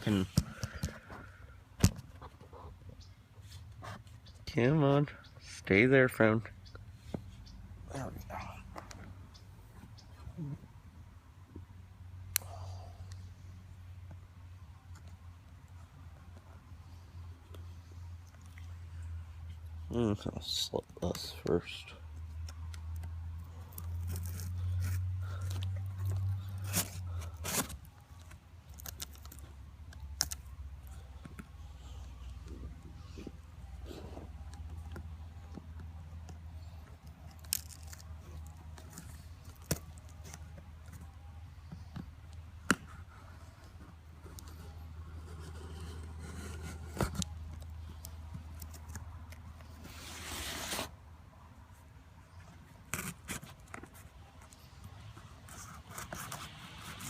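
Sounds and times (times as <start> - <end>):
tape and cardboard crackling: 22.2 - 51.0, 52.3 - 57.0
packing tape tearing: 23.8 - 29.4.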